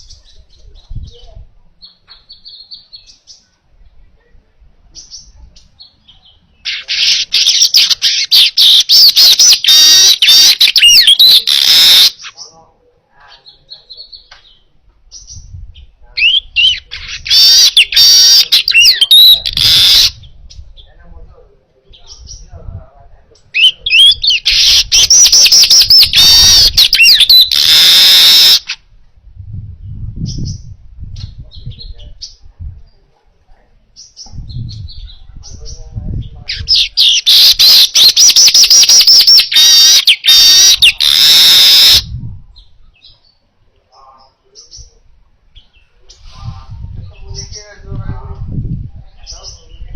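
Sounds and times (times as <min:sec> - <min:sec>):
weaver bird chirping and trilling: 0:00.0 - 0:03.4, 0:05.0 - 0:12.5, 0:13.3 - 0:20.9, 0:23.5 - 0:28.8, 0:34.0 - 0:43.4.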